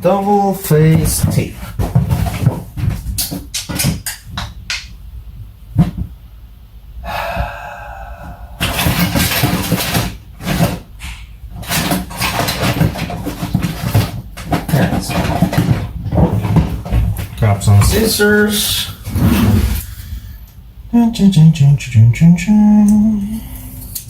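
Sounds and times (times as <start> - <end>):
rustling knocking and scraping: 0.2 - 4.7, 8.6 - 20.2
faint pitched sound: 7.0 - 9.0.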